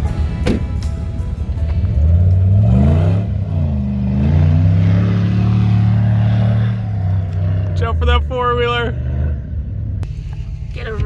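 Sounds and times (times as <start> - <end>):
music: 0.0 - 3.4
suv engine revving: 0.0 - 11.0.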